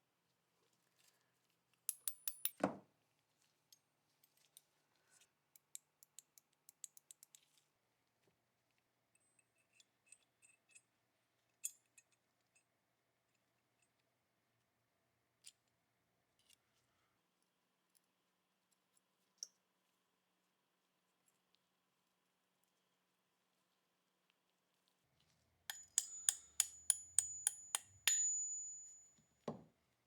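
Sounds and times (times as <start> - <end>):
small metal parts clicking: 1.9 - 2.6, 25.7 - 28.6.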